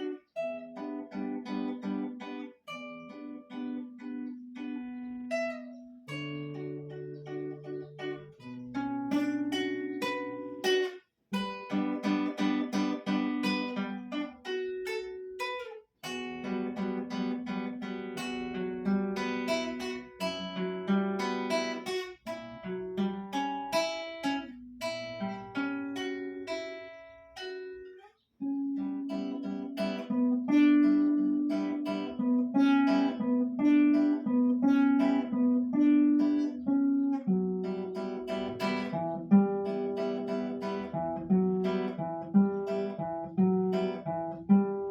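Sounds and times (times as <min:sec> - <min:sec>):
fingerpicked acoustic guitar: 0:00.0 - 0:44.9.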